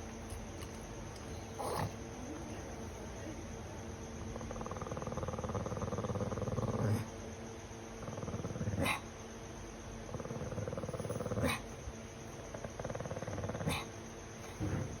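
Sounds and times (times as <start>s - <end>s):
dog growling: 1.6s - 2.0s, 4.3s - 7.2s, 8.0s - 9.1s, 10.0s - 11.8s, 12.4s - 15.0s.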